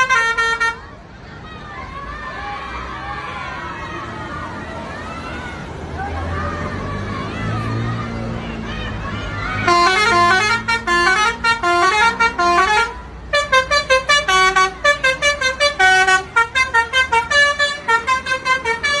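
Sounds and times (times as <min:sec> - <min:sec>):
bus horn melody: 0:00.0 - 0:00.8, 0:09.6 - 0:19.0.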